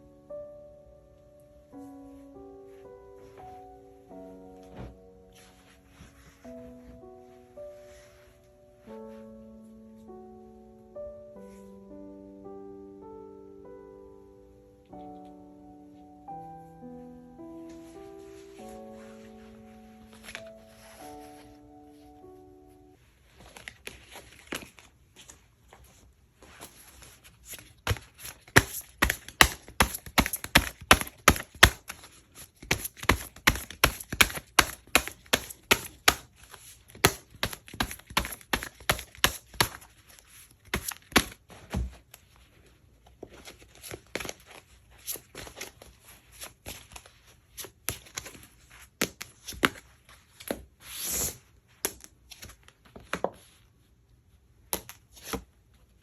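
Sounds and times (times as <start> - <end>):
cards tapping and flicking: 27.5 - 42.0, 43.2 - 50.6.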